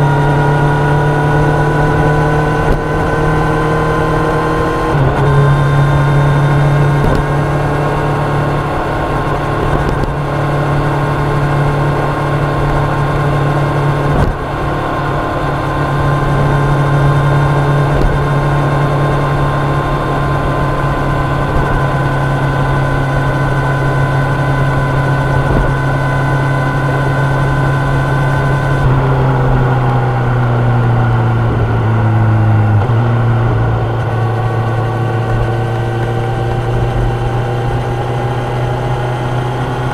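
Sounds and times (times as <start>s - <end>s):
motorcycle engine cruising: 0.0s - 39.9s
wind and road noise: 0.0s - 39.9s.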